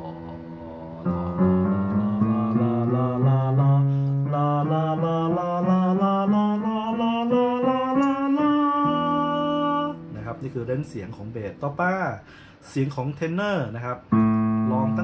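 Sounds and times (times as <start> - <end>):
man singing a rising scale: 0.0 - 10.4.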